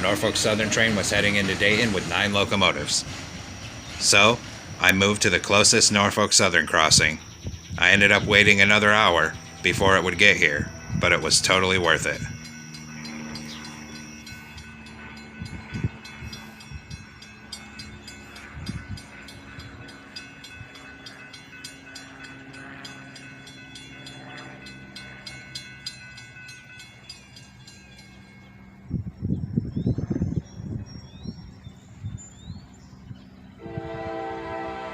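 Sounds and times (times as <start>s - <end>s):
crossing warning bell ringing: 0.0s - 34.9s
train rumble: 0.0s - 34.9s
locomotive horn: 33.6s - 34.9s.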